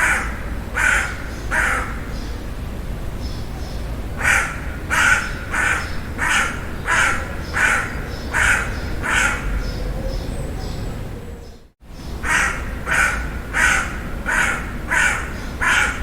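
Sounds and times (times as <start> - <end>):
crow cawing: 0.0 - 2.2, 4.2 - 9.7, 12.2 - 16.0.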